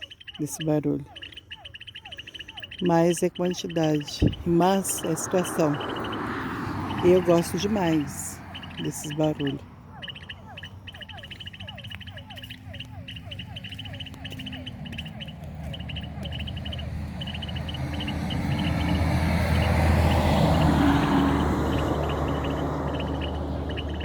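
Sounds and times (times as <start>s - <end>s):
steady high chirping: 0.0s - 24.0s
low rumble: 4.1s - 7.1s.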